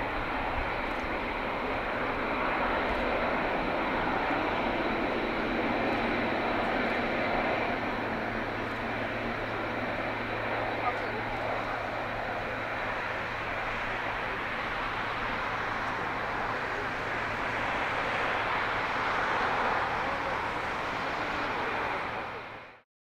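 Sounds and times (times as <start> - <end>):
jet engine takeoff roar: 0.0 - 22.8.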